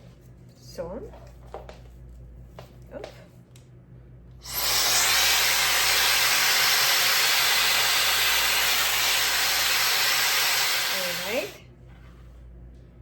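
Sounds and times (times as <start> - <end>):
hot-air brush blowing with whine: 4.4 - 11.6.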